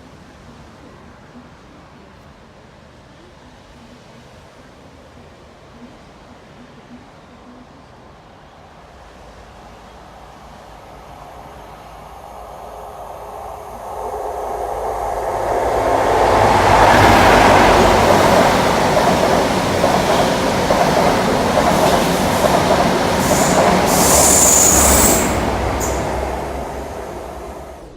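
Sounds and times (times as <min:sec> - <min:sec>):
train rumbling past: 0:08.2 - 0:27.9
wheel squeal: 0:23.2 - 0:26.3.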